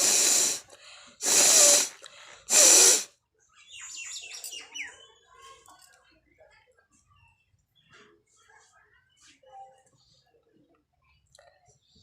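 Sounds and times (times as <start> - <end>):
person blowing nose: 0.0 - 3.1
faint bird chirps: 3.5 - 5.7.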